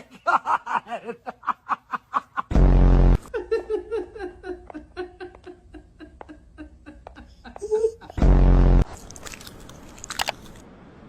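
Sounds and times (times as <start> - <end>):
person laughing: 3.4 - 8.3.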